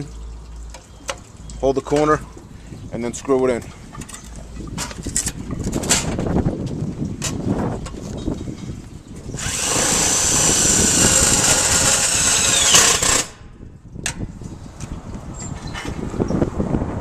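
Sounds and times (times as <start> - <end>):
power drill driving a screw: 9.4 - 13.4.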